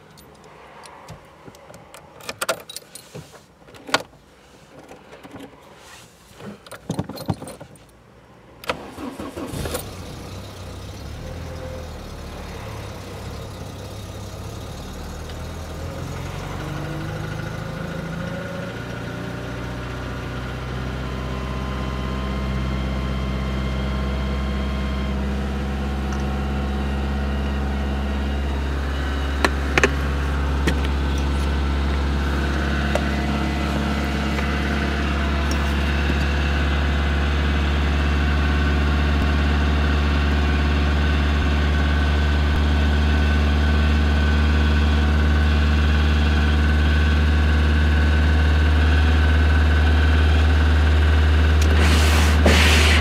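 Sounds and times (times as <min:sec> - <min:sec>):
car engine starting and idling: 0:06.4 - 0:53.0.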